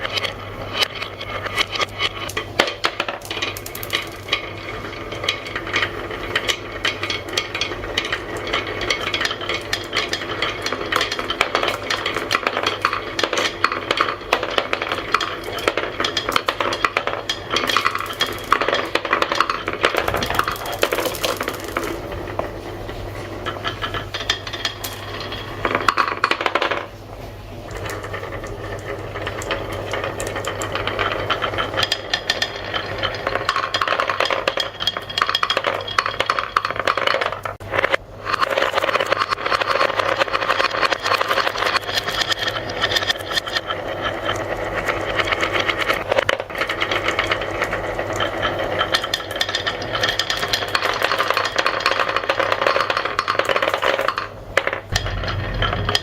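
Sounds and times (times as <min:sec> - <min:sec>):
marbles clattering down a marble run: 0:00.0 - 0:27.0, 0:27.7 - 0:56.0
steady low hum: 0:54.1 - 0:56.0.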